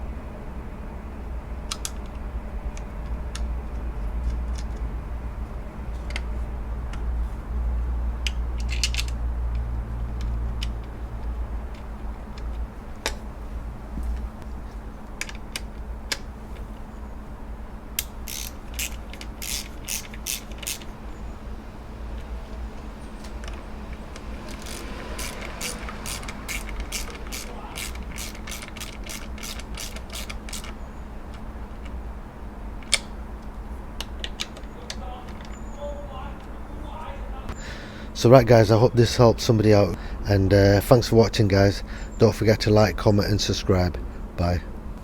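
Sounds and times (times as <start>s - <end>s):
socket ratchet clicking: 1.7s - 4.9s, 8.2s - 13.3s, 18.0s - 21.0s, 23.2s - 32.0s, 32.8s - 35.7s.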